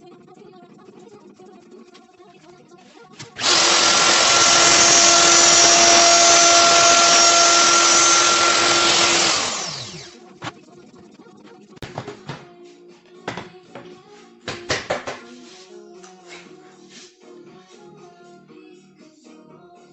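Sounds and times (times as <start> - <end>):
power drill running: 3.4 - 10.2.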